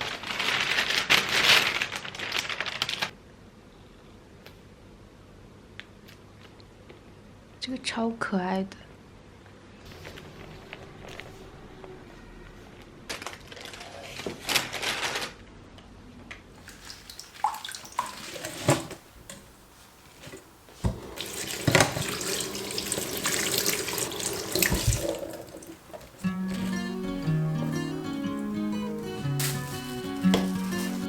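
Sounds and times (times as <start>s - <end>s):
tap water running into sink: 16.6s - 19.6s, 20.2s - 26.2s, 30.3s - 31.0s.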